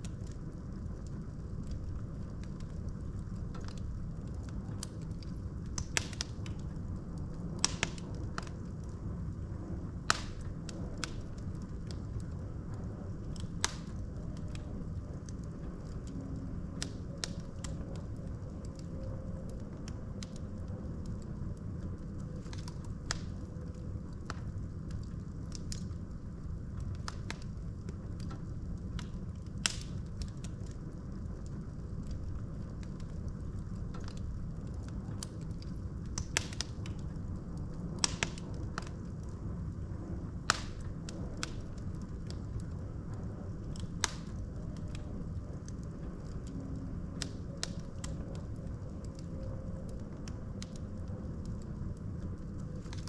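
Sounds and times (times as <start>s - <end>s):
logs crackling and popping: 0.0s - 53.0s
wood fire burning: 0.0s - 53.0s.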